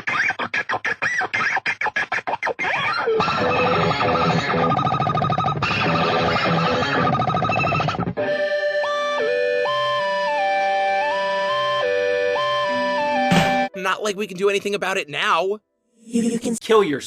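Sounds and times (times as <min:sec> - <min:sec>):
distorted guitar-like music: 0:00.0 - 0:08.6, 0:11.6 - 0:13.8.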